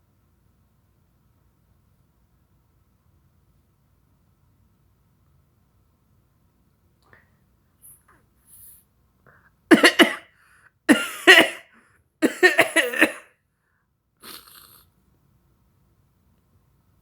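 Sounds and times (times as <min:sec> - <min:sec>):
man coughing: 0:09.7 - 0:10.3, 0:10.9 - 0:13.3
faint breathy exhale: 0:14.2 - 0:14.9.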